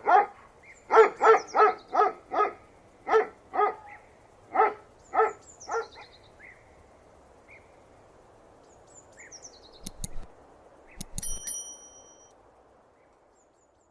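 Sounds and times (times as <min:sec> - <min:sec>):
small birds chirping: 0:08.6 - 0:10.3
short metallic ring: 0:09.8 - 0:10.3, 0:10.9 - 0:12.3
sharp clicks: 0:09.8 - 0:12.1.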